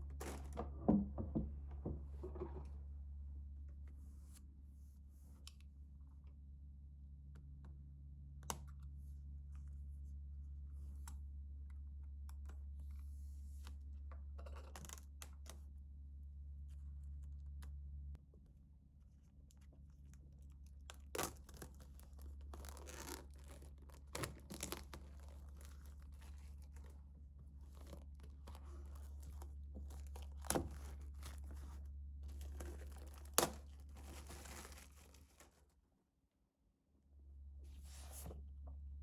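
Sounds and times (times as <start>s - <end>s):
low steady hum: 0.0s - 36.1s
paper rustling and tearing: 21.1s - 27.0s, 27.6s - 35.7s.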